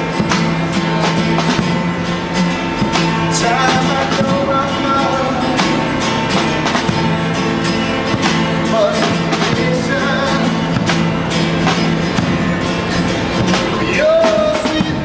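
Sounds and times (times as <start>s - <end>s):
drums keeping a steady beat: 0.0s - 15.0s
strummed acoustic guitar: 0.0s - 15.0s
person singing: 3.4s - 6.0s, 8.6s - 10.7s.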